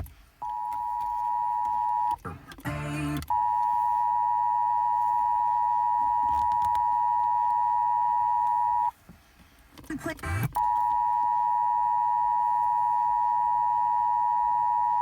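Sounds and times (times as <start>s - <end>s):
radio audio: 2.0s - 4.0s, 9.8s - 11.0s.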